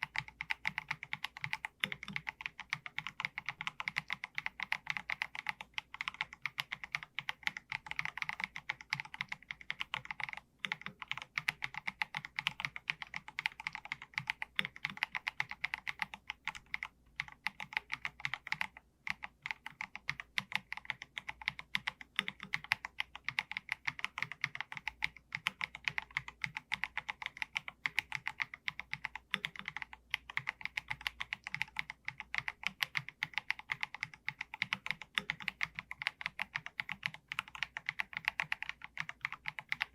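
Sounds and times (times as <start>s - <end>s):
typing on mechanical keyboard: 0.0s - 39.9s.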